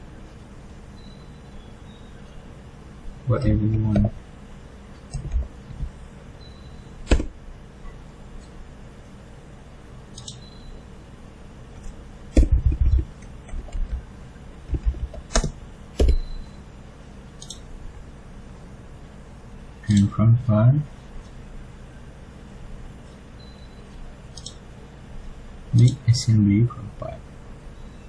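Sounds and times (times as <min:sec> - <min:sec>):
computer mouse clicks: 0:05.1 - 0:05.9, 0:10.2 - 0:10.5, 0:14.7 - 0:16.3, 0:17.4 - 0:17.6, 0:24.3 - 0:24.6
keyboard typing: 0:05.1 - 0:06.0, 0:10.2 - 0:10.4, 0:12.4 - 0:16.4, 0:17.4 - 0:17.6, 0:24.3 - 0:24.6.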